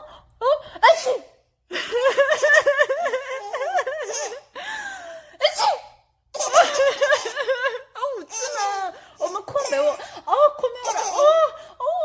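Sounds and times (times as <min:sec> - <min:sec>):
high-pitched laughing: 0:06.4 - 0:12.0.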